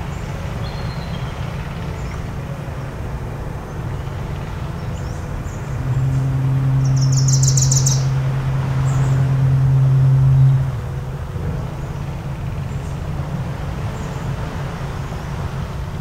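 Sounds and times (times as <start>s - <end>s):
bird chirping trill: 4.8s - 10.6s
foghorn blast: 5.7s - 11.8s.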